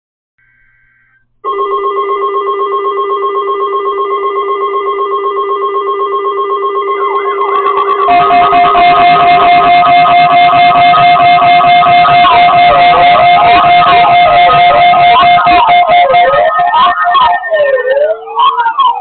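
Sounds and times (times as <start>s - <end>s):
weather radio alert tone: 1.5s - 19.0s
guitar music: 7.0s - 17.6s.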